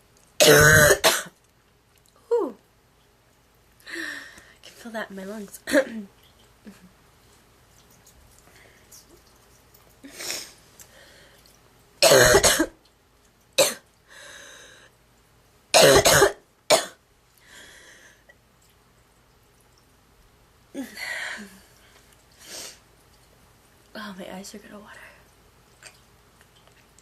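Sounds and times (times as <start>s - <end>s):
girl coughing: 0.4s - 1.4s, 12.0s - 12.7s, 15.8s - 17.0s.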